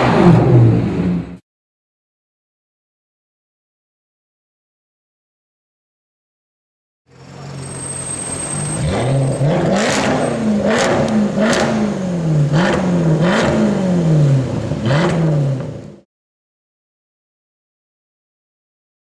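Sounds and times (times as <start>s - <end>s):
car engine revving: 7.1s - 16.0s.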